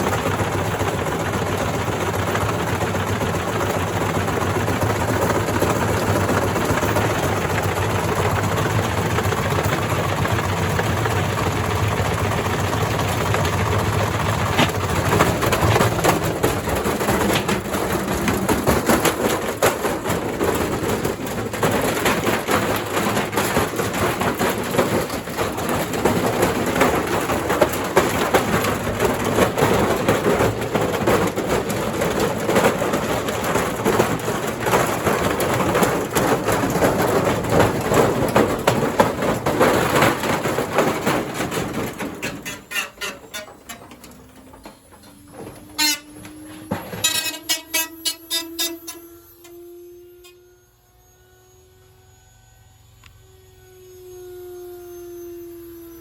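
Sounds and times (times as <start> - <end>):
washing machine rumble: 0.0 - 49.1
bricks banging in drum: 13.2 - 49.0.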